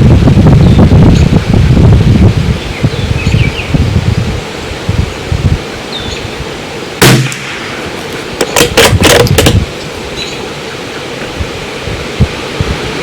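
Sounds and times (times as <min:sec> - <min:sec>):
wind buffeting microphone: 0:00.0 - 0:13.0
rifle shot: 0:07.0 - 0:09.6
faint bird chirps: 0:10.1 - 0:10.5.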